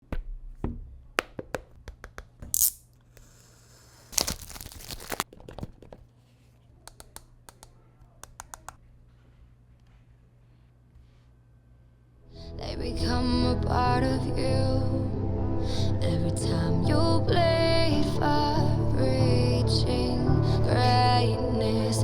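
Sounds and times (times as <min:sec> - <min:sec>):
packaging tearing and crinkling: 0:02.6 - 0:02.8, 0:04.1 - 0:05.3
sharp clicks and taps: 0:06.8 - 0:08.8.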